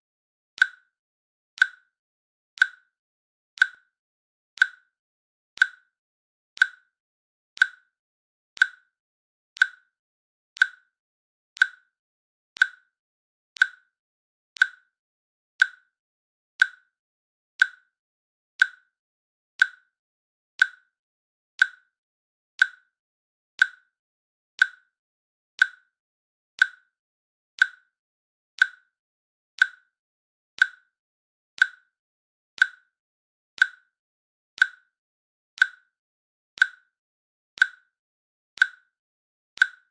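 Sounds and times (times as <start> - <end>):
timer clicks ticking: 0.6 - 0.9, 1.6 - 1.9, 2.6 - 2.9, 3.6 - 3.9, 4.6 - 4.9, 5.6 - 5.9, 6.6 - 7.0, 7.6 - 8.0, 8.6 - 8.9, 9.6 - 10.0, 10.6 - 11.0, 11.6 - 12.0, 12.6 - 12.9, 13.6 - 13.9, 14.6 - 15.0, 15.6 - 15.9, 16.6 - 17.0, 17.6 - 17.9, 18.6 - 18.9, 19.6 - 20.0, 20.6 - 21.0, 21.6 - 21.9, 22.6 - 22.9, 23.6 - 24.0, 24.6 - 25.0, 25.6 - 26.0, 26.6 - 27.0, 27.6 - 28.0, 28.6 - 29.0, 29.6 - 30.0, 30.6 - 31.0, 31.6 - 32.0, 32.6 - 33.0, 33.6 - 34.0, 34.6 - 35.0, 35.6 - 36.0, 36.6 - 37.0, 37.6 - 37.9, 38.6 - 39.0, 39.6 - 39.9.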